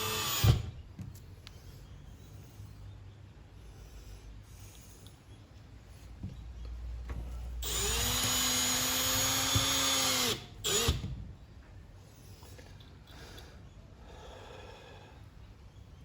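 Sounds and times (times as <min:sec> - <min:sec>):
power drill motor running: 0:00.0 - 0:00.7, 0:07.6 - 0:11.0.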